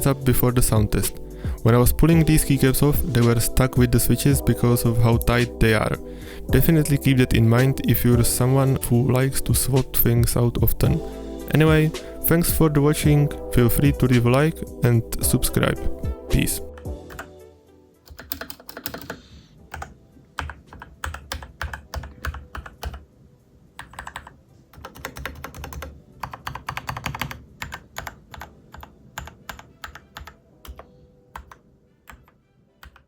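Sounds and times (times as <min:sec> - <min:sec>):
mechanical keyboard typing: 0:17.1 - 0:17.3, 0:18.0 - 0:23.0, 0:23.8 - 0:33.0.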